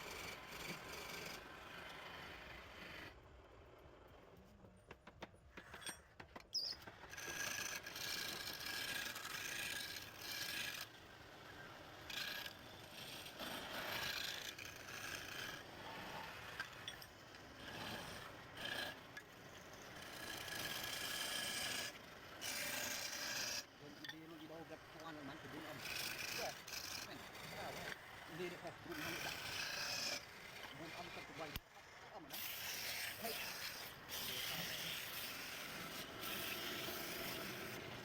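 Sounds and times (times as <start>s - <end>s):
tool scraping wood on lathe: 0.0s - 3.2s, 5.6s - 11.0s, 11.6s - 38.0s.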